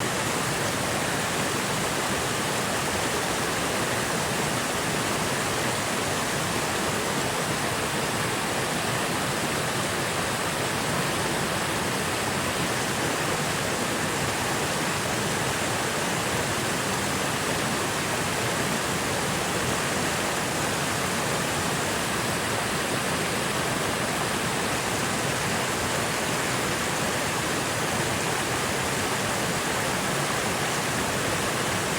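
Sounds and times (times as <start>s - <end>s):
creek water babbling: 0.0s - 31.9s.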